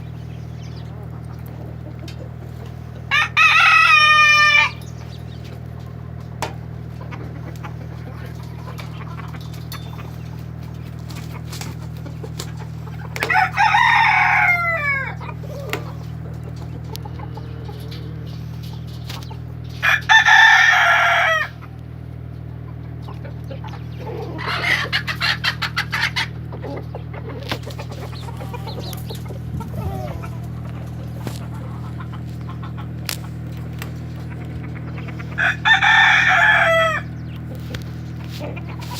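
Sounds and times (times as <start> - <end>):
roosters crowing: 0.0 - 38.9
steady low hum: 0.0 - 38.9
short clucking calls: 22.5 - 38.9.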